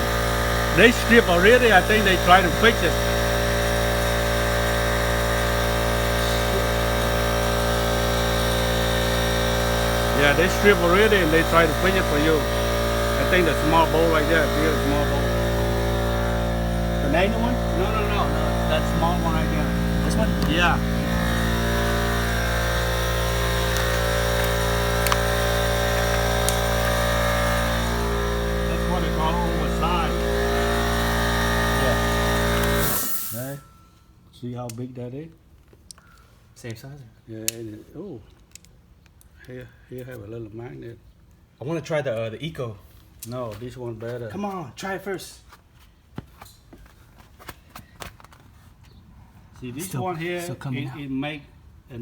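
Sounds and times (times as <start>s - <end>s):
mechanical hum with tones: 0.0s - 34.3s.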